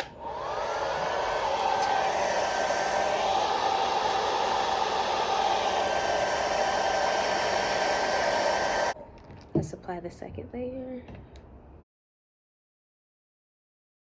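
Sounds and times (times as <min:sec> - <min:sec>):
hair dryer running: 0:00.0 - 0:09.0.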